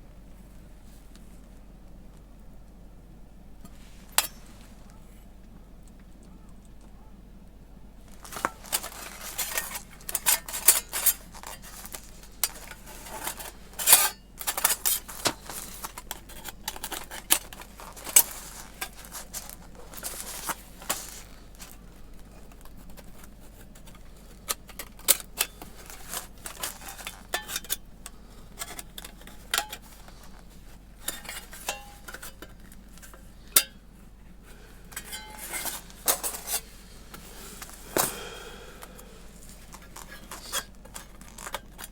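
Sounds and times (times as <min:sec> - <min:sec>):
metal plates clinking and clattering: 0:31.0 - 0:33.8, 0:34.9 - 0:36.6.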